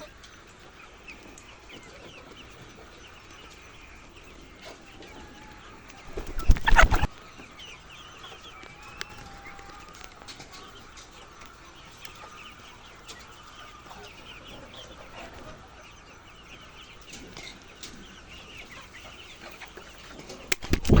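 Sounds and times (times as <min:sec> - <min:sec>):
hens clucking: 0:00.0 - 0:21.0
sharp click: 0:20.5 - 0:21.0.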